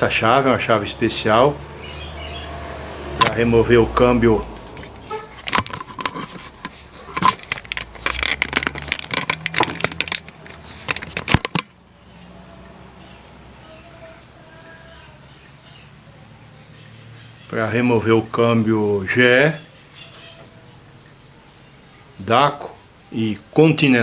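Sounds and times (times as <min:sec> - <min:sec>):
metal hand tools clanking: 0:05.2 - 0:11.6.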